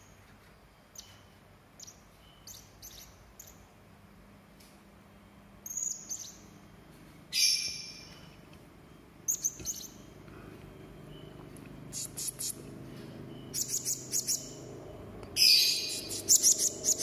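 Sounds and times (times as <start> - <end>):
parrot calling: 15.4 - 17.0.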